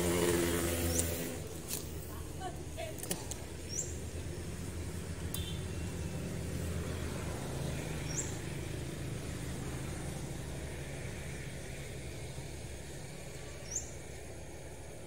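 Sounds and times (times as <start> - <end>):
road traffic rumble: 0.0 - 15.0.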